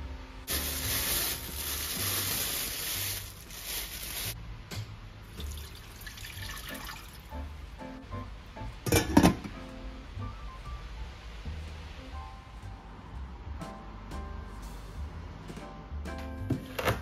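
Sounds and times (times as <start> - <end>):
tap water running into sink: 5.4 - 7.2.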